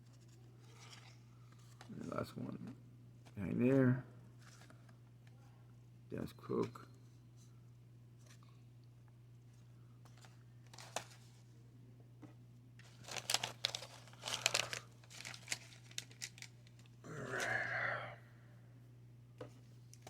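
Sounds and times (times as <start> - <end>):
wax paper wrapper crinkling: 12.8 - 17.0.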